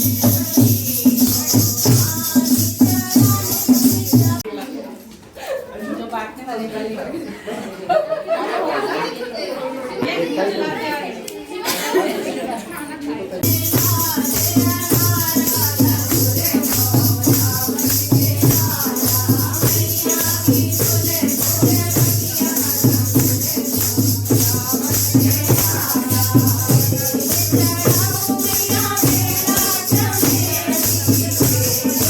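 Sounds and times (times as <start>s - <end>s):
shaker-like rattle: 0.0s - 5.2s, 13.4s - 32.0s.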